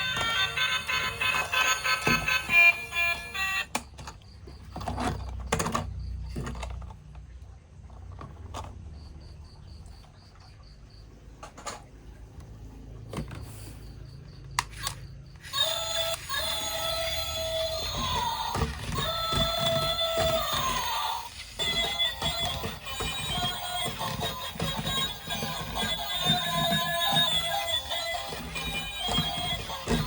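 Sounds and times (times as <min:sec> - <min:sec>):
music: 0:00.0 - 0:03.7, 0:16.3 - 0:30.0
plastic toys and packaging handled: 0:00.0 - 0:09.1, 0:14.4 - 0:30.0.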